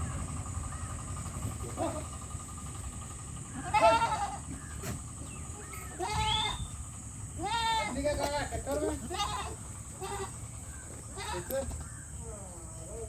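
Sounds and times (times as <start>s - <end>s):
goats bleating: 3.5s - 4.6s, 6.0s - 6.7s, 7.3s - 11.8s.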